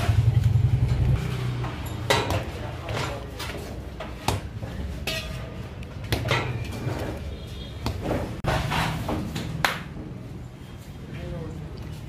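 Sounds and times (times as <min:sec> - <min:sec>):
metal utensils knocking and clinking: 0:01.7 - 0:04.2, 0:05.0 - 0:05.6, 0:06.2 - 0:06.9.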